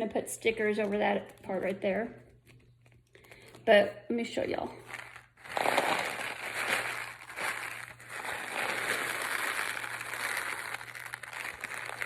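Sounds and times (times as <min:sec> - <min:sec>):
rain stick trickling: 0:04.9 - 0:12.0.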